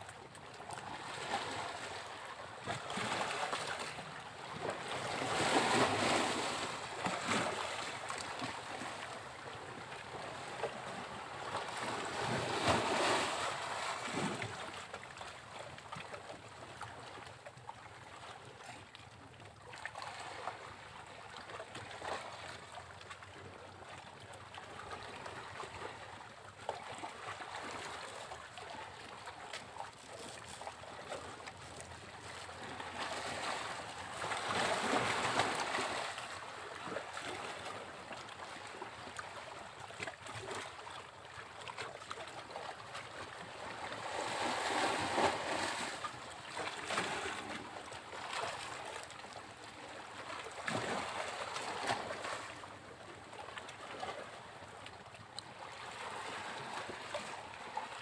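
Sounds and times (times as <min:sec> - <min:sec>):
sea waves breaking on beach: 0:02.9 - 0:09.0, 0:10.7 - 0:14.6, 0:32.4 - 0:39.0, 0:43.4 - 0:48.8.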